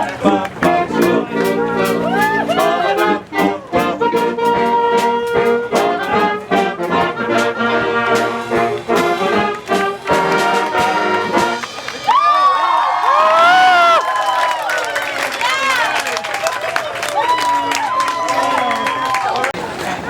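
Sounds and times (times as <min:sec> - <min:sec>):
voices calling out: 0:00.0 - 0:04.9
brass band playing: 0:00.0 - 0:12.8
drum hits: 0:00.6 - 0:12.3.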